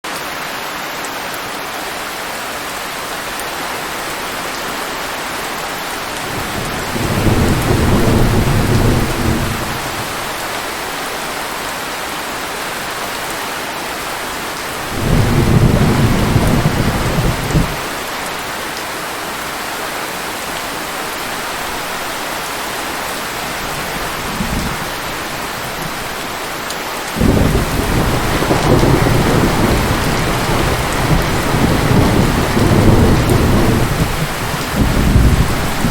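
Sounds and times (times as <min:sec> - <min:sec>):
steady rain hiss: 0:00.1 - 0:35.9
low thunder rumbling: 0:06.3 - 0:10.3, 0:14.9 - 0:17.8, 0:27.2 - 0:35.9.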